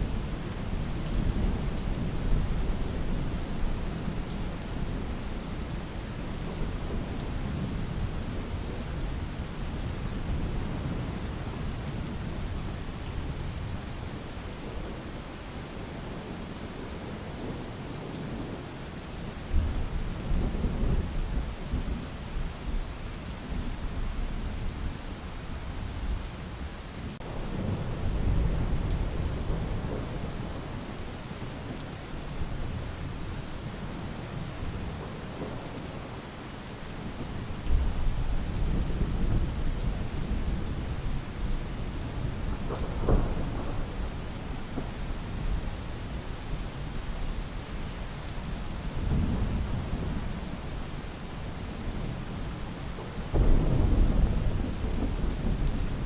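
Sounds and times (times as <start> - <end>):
steady rain: 0.0 - 56.0
low thunder rolling: 37.7 - 45.7, 53.3 - 56.0.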